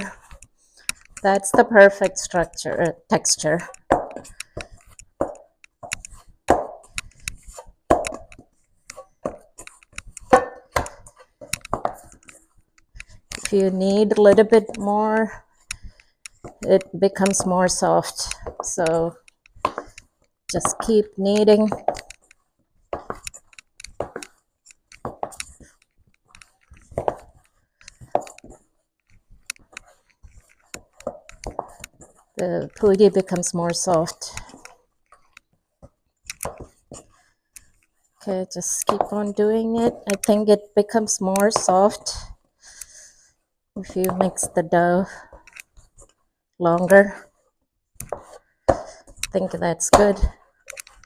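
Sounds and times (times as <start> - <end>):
hands kneading dough: 14.2 - 40.4.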